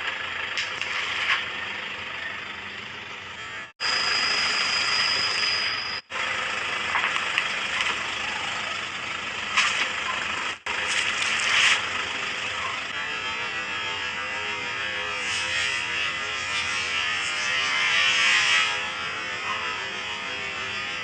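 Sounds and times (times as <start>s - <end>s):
crackling crunches: 0.5s - 1.6s, 9.5s - 11.9s
car tyre crushing objects: 9.5s - 12.0s.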